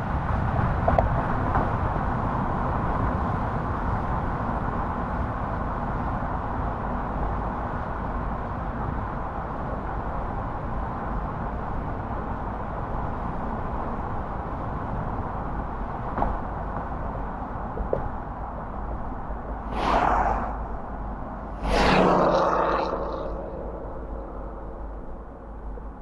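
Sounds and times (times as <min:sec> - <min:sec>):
car engine hum: 0:19.6 - 0:26.0.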